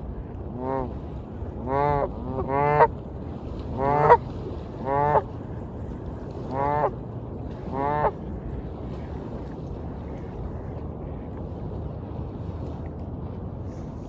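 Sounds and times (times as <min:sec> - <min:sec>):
waterfowl honking calls: 0:00.6 - 0:01.0, 0:01.6 - 0:02.9, 0:03.7 - 0:05.4, 0:06.5 - 0:07.0, 0:07.6 - 0:08.2.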